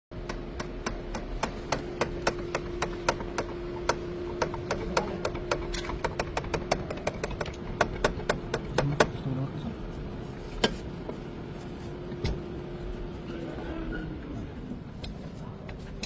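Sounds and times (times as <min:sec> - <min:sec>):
rapid sharp taps: 0:00.2 - 0:09.2
faint steady hum: 0:00.2 - 0:16.0.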